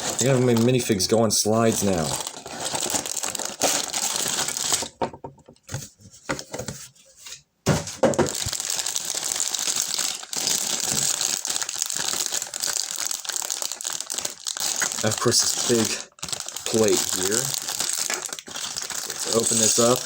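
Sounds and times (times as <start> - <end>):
plastic bags crinkling: 0.0 - 5.0, 7.9 - 20.0
plastic pieces clicking and rattling: 16.6 - 20.0.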